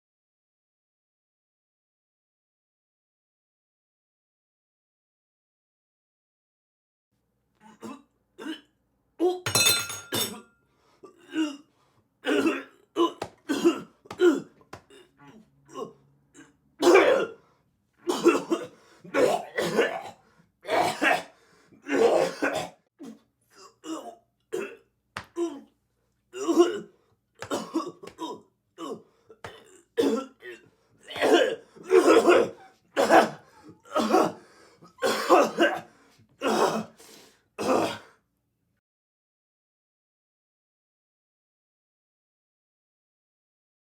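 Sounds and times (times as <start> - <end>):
man coughing and gagging: 9.5 - 10.4, 12.2 - 14.5, 15.7 - 17.4, 18.1 - 22.8, 23.6 - 24.9, 26.4 - 37.0
man gasping: 32.5 - 35.0.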